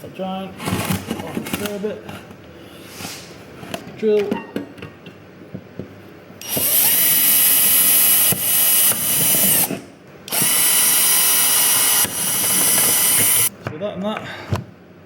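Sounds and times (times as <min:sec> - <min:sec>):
power drill boring holes: 0:06.4 - 0:13.5.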